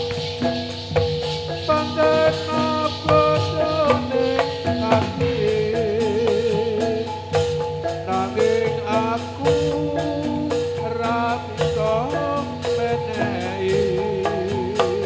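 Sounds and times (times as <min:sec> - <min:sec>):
metallophone notes: 0:00.0 - 0:15.0
steady drum pattern: 0:00.0 - 0:15.0
wavering held melody line: 0:00.0 - 0:15.0.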